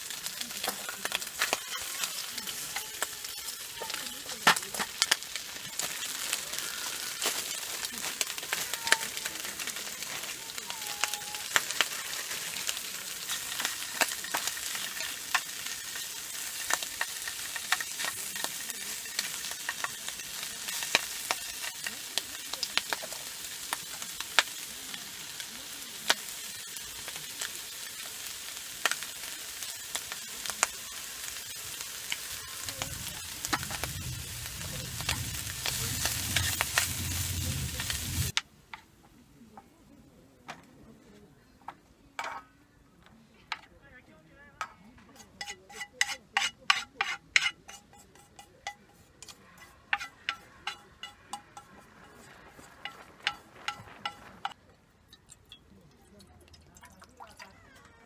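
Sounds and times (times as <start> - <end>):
food sizzling in a pan: 0.0 - 38.4, 45.1 - 54.6
low rumble: 32.8 - 38.3.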